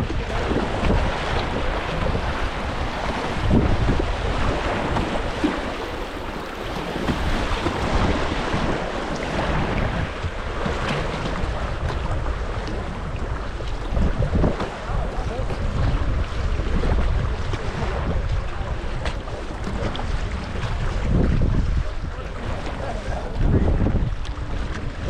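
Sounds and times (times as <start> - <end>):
wind rumbling on microphone: 0.0 - 25.0
river water rushing: 4.3 - 9.6.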